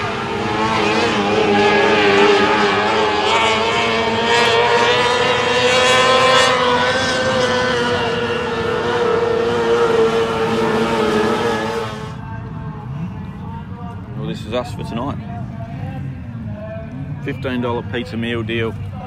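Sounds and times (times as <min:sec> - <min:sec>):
race car engines at high revs: 0:00.0 - 0:14.1.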